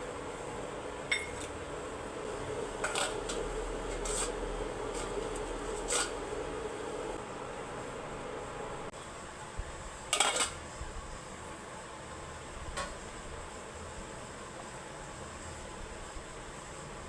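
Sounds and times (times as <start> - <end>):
steady background hum: 0.0 - 17.0
utensil clinking against pot: 1.1 - 1.5.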